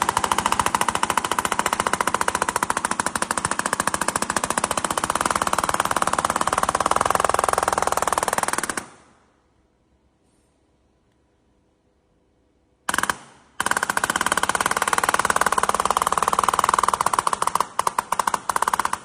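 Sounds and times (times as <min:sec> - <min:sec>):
pneumatic hammer hammering: 0:00.0 - 0:08.9.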